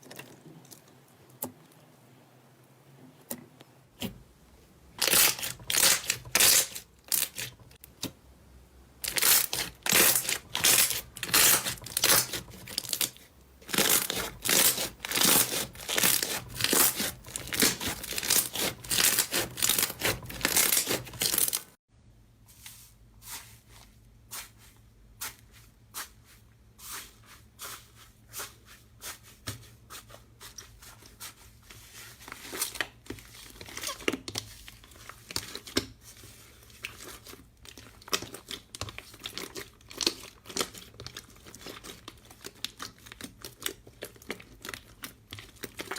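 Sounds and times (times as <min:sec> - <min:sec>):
slime crackling and popping: 0:09.1 - 0:21.8.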